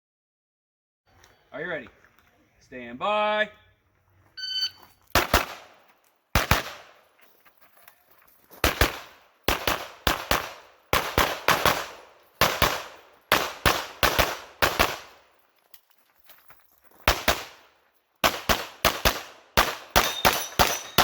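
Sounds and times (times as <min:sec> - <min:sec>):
pistol shots with echo: 0:05.2 - 0:05.8, 0:06.4 - 0:07.0, 0:08.6 - 0:15.2, 0:17.1 - 0:17.6, 0:18.2 - 0:21.0.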